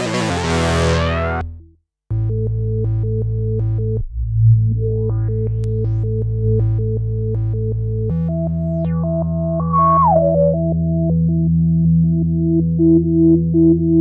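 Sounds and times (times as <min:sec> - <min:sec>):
gliding high lead note: 0:00.0 - 0:01.5
pulsed synthesizer chords: 0:00.0 - 0:14.0
synthesizer bass note: 0:00.0 - 0:14.0.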